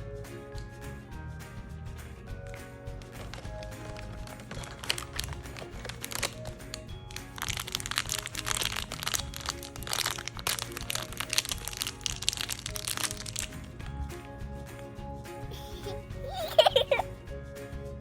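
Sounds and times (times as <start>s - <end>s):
background music: 0.0s - 18.0s
toy packaging crinkling: 3.1s - 13.9s, 15.5s - 17.0s.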